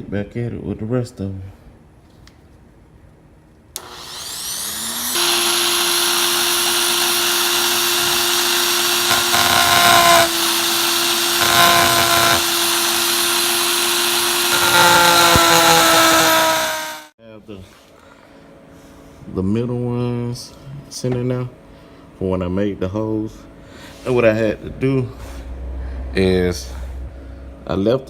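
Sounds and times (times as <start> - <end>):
rotary tool whining and grinding: 3.8 - 17.2.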